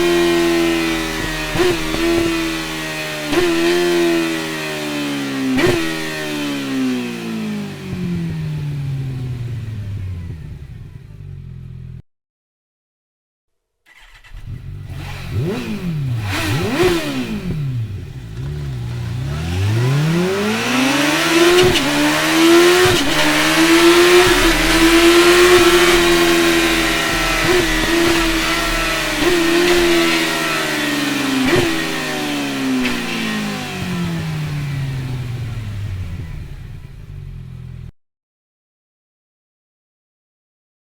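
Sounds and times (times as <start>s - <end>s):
motorcycle engine revving: 0.0s - 12.0s, 13.9s - 37.9s.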